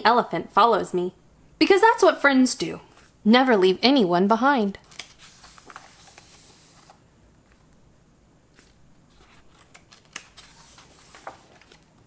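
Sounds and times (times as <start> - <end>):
paper page rustling: 4.8 - 7.7, 8.5 - 12.0
soft clicks of page turning: 8.5 - 11.9.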